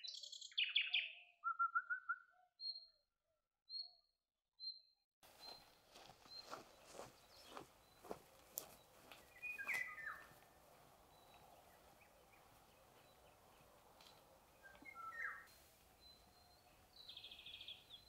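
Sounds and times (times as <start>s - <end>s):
birds whistling: 0.0s - 2.8s, 6.2s - 10.4s, 14.0s - 18.0s
thin high bird call: 14.6s - 16.6s.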